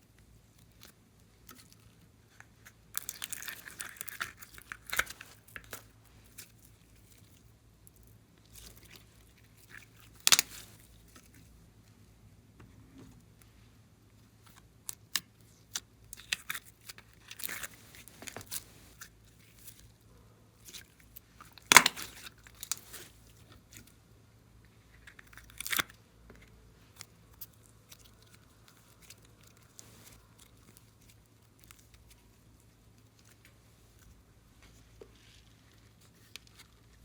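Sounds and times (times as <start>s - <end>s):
sticky slime pops and crackles: 10.0s - 10.7s, 21.4s - 23.0s.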